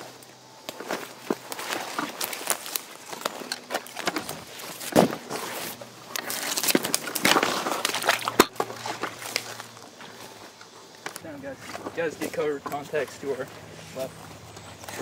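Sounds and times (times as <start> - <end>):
footsteps through brush: 0.0 - 15.0.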